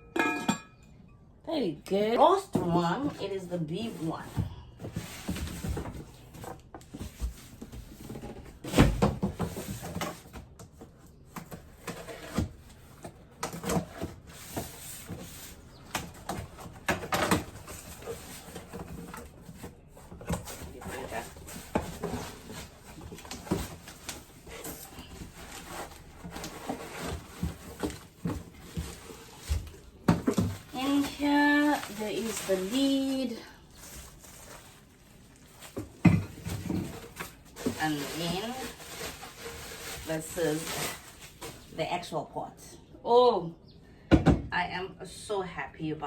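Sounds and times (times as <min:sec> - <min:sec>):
packaging rustling: 0:17.4 - 0:41.7.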